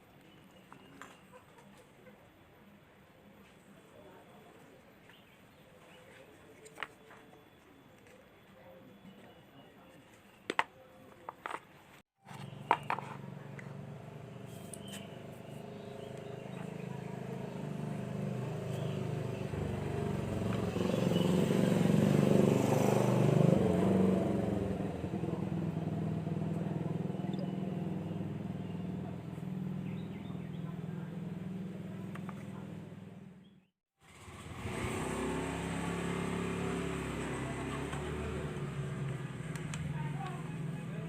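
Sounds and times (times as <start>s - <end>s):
vehicle engine passing by: 12.3s - 33.4s, 34.0s - 41.0s.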